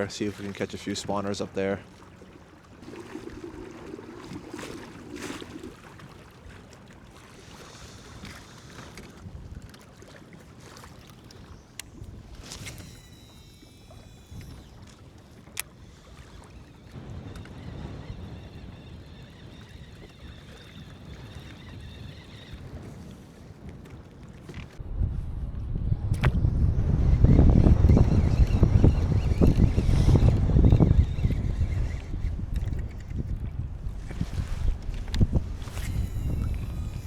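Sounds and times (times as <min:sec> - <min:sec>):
water sloshing against hull: 0:00.0 - 0:37.0
wind buffeting microphone: 0:15.8 - 0:37.0
sharp clicks: 0:27.8 - 0:33.4.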